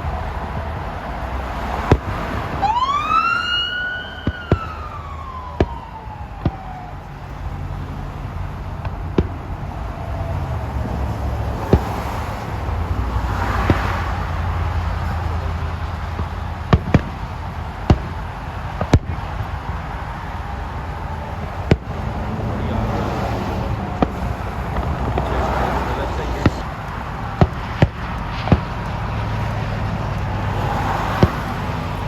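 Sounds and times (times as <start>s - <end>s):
fireworks bangs: 0.0s - 7.0s, 8.2s - 32.0s
steady low rumble: 3.9s - 32.0s.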